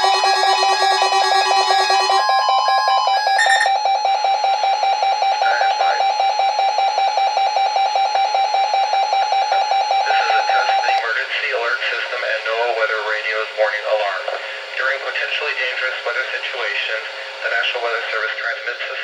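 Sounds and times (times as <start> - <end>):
higher alarm tones: 0.0 - 11.0
rapidly pulsed beeping tone: 0.0 - 11.0.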